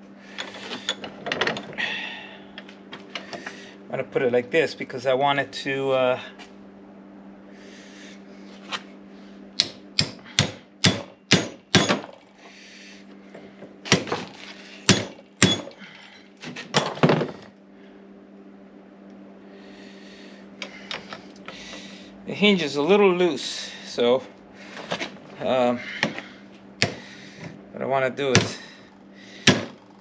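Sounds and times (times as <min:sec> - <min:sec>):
steady low hum: 0:00.0 - 0:30.0
hammer striking metal hinge: 0:09.6 - 0:12.0.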